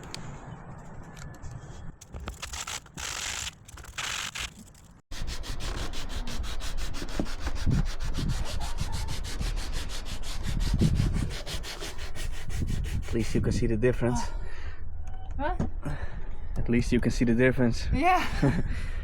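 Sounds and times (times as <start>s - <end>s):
sandpaper scrubbing wood: 2.2s - 13.4s.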